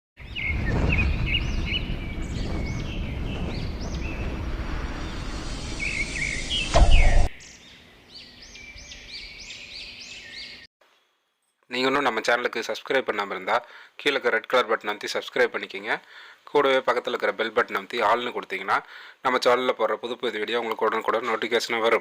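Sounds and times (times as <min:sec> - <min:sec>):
loud rushing noise: 0:00.5 - 0:07.4
sharp knock: 0:05.3 - 0:07.3.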